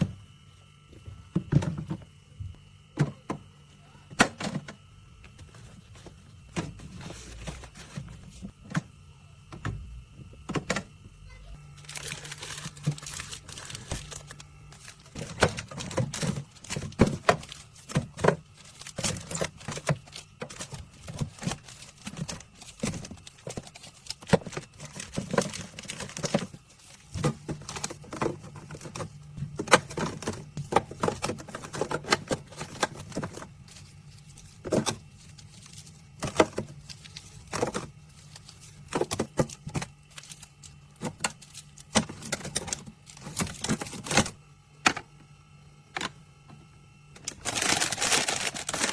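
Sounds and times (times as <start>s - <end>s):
steady low hum: 0.0s - 48.9s
hard objects clicking and rattling: 11.8s - 45.0s.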